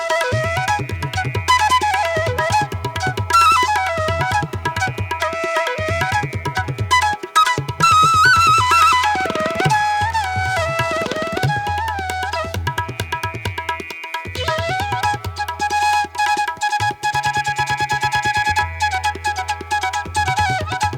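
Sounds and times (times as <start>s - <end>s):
tabla drum strokes: 0.0s - 20.9s
sliding melody: 1.3s - 13.8s.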